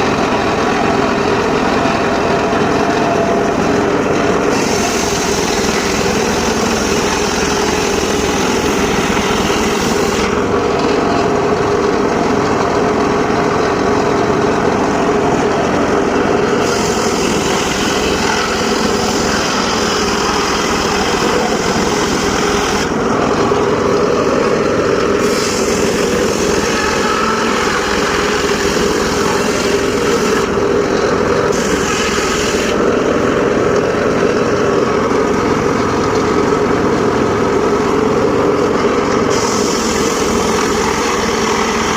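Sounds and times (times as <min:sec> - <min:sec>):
circular saw drive running: 0:00.0 - 0:41.9
saw blade hissing in wood: 0:04.5 - 0:10.4, 0:16.5 - 0:23.0, 0:25.2 - 0:30.6, 0:31.5 - 0:32.8, 0:39.3 - 0:41.9.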